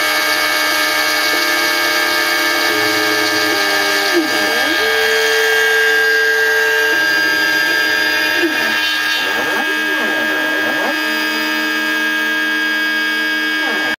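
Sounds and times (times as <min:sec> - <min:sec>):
spindle whine: 0:00.0 - 0:14.0
stepper motors gliding tones: 0:00.0 - 0:14.0.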